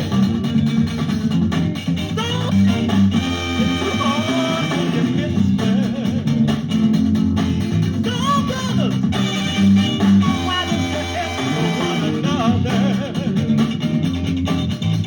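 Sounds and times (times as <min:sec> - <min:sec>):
guitar and bass: 0:00.0 - 0:15.0
steady beat: 0:00.0 - 0:15.0
person singing: 0:02.1 - 0:06.5, 0:08.0 - 0:13.7.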